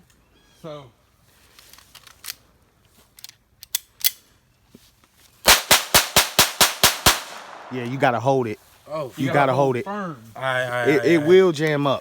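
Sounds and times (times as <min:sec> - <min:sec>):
rapid pistol shots: 0:05.5 - 0:08.0.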